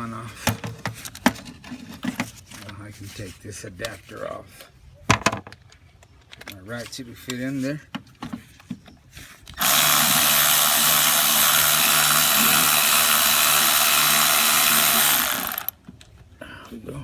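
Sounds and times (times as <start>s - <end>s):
power ratchet running: 9.6s - 15.8s.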